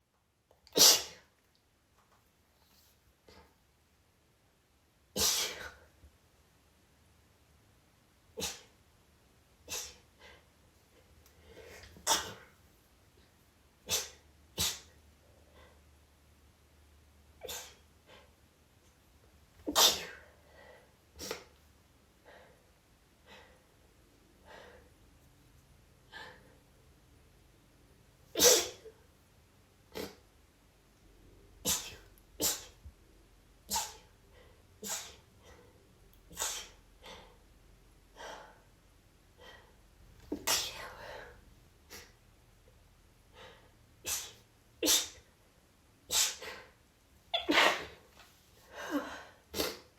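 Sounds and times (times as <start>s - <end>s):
woman sneezing: 0.8s - 1.3s, 5.2s - 5.8s, 8.4s - 8.7s, 12.0s - 12.4s, 13.9s - 14.9s, 17.4s - 17.8s, 19.7s - 20.3s, 28.4s - 28.9s, 31.6s - 32.8s, 33.7s - 34.1s, 34.8s - 35.2s, 36.3s - 36.8s, 40.4s - 41.0s, 44.0s - 45.3s, 46.1s - 46.7s, 47.4s - 48.0s.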